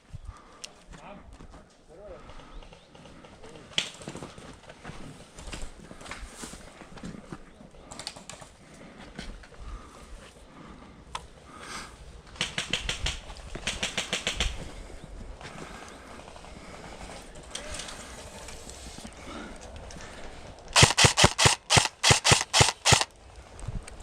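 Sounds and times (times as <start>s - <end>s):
airsoft guns firing: 20.8s - 23.1s.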